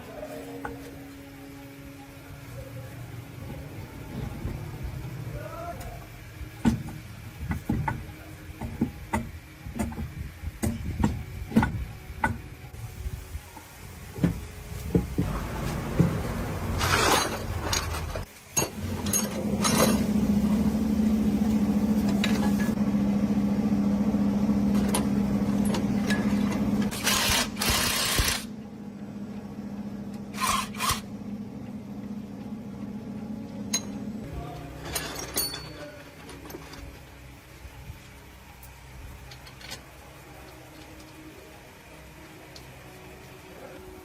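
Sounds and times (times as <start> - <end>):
scraping noises: 15.2 - 18.3
power tool motor humming: 26.9 - 28.5, 30.3 - 31.1.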